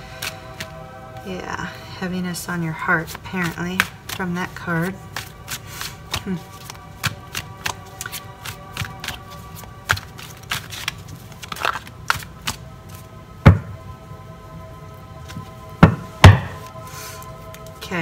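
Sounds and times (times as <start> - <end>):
soft background music: 0.0 - 18.0
card slaps: 0.2 - 0.8, 3.0 - 12.6.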